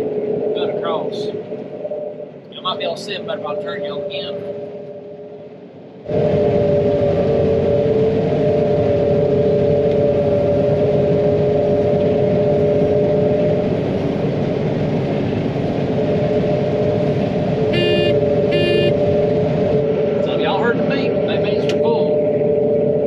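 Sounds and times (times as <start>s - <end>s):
combine harvester running: 5.6s - 23.0s
short electronic beeps: 17.7s - 19.0s.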